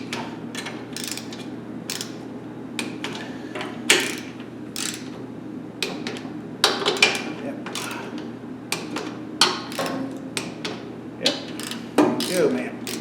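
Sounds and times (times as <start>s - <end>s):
socket wrench ratcheting: 1.0s - 2.2s, 3.9s - 5.1s, 7.0s - 8.0s, 9.7s - 10.0s, 11.6s - 13.0s.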